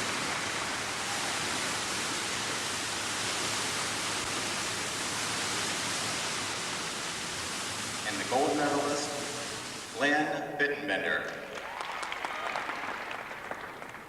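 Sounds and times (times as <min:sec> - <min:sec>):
steady rushing hiss: 0:00.0 - 0:14.0.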